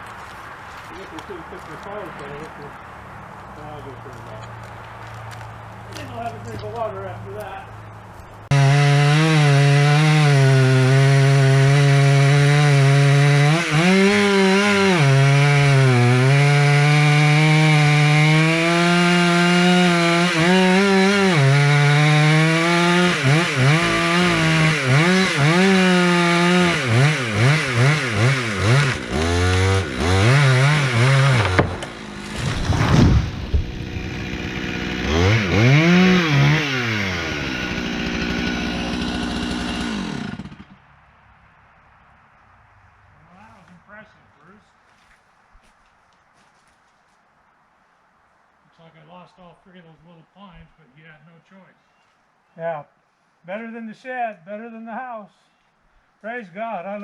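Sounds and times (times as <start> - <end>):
chainsaw revving: 8.5 - 40.8.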